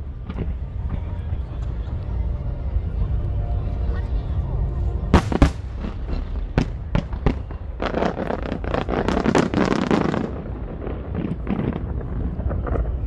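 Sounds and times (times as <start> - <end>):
firework bangs: 5.2 - 13.0
firework crackling pops: 5.2 - 13.0.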